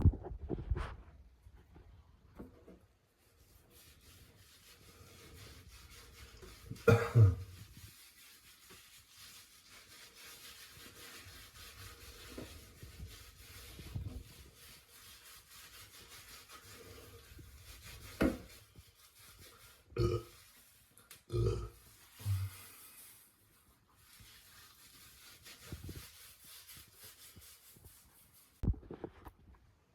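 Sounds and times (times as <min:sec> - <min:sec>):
rubbing while washing: 0:00.8 - 0:28.7
man burping: 0:20.0 - 0:20.3, 0:21.3 - 0:21.7.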